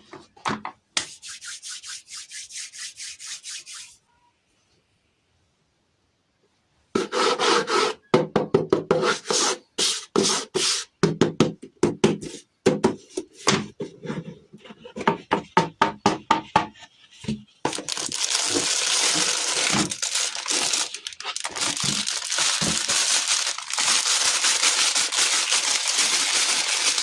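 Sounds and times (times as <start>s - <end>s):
quick scraping strokes: 1.0s - 4.0s
continuous crinkling: 17.6s - 27.0s.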